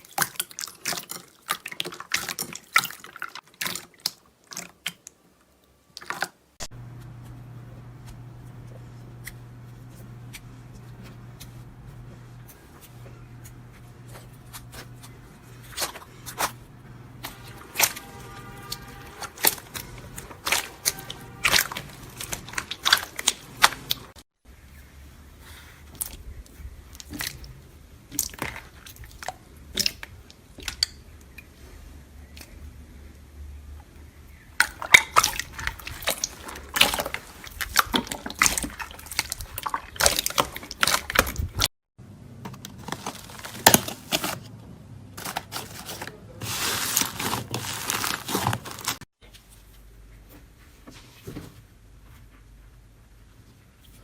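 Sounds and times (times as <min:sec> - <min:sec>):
hands squishing slime: 0:08.0 - 0:24.1, 0:34.6 - 0:41.6.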